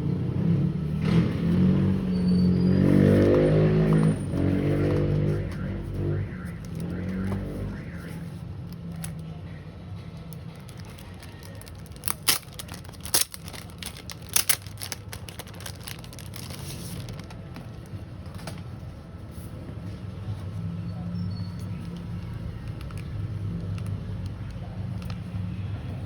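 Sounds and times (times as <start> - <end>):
packaging crinkling: 10.3 - 17.9.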